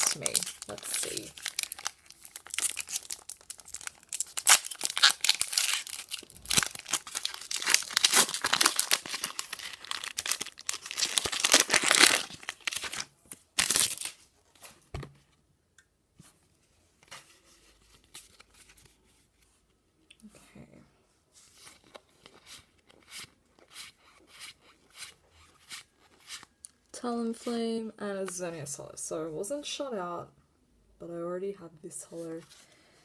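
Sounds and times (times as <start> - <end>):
foil wrapper tearing and crinkling: 0.0 - 14.2.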